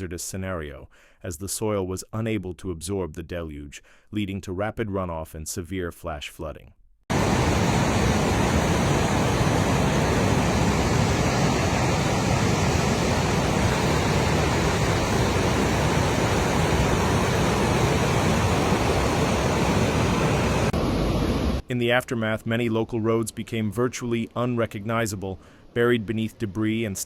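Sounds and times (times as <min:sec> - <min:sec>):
floodwater rushing: 0:07.1 - 0:20.8.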